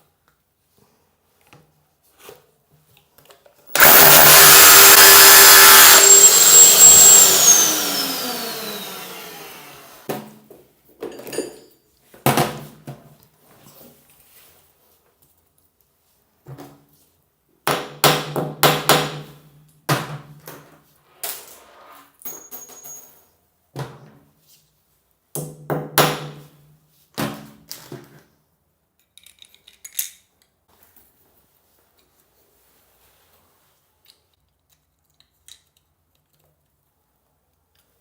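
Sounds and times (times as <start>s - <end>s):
power drill running in bursts: 3.7s - 10.1s.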